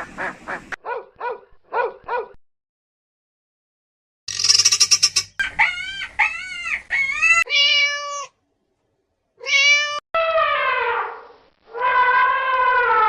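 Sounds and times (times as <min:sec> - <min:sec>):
animal cries: 0:04.3 - 0:08.3, 0:09.4 - 0:13.0
shrill animal chatter: 0:04.3 - 0:08.3.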